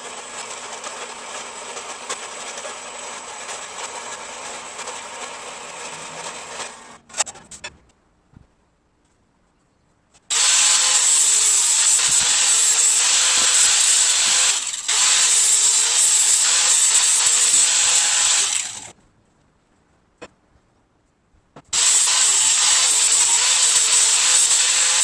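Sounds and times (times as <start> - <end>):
power tool cutting metal: 0.0 - 7.0, 10.3 - 18.9, 21.8 - 25.0.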